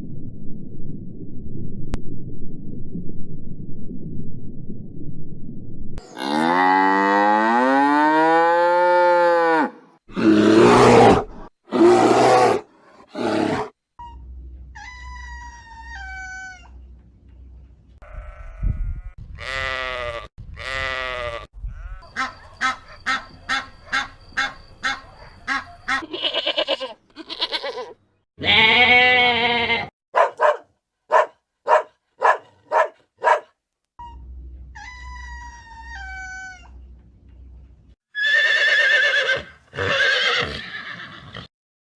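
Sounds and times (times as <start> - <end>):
farm animal calls: 13.2 - 16.9, 19.4 - 33.4, 34.0 - 36.9.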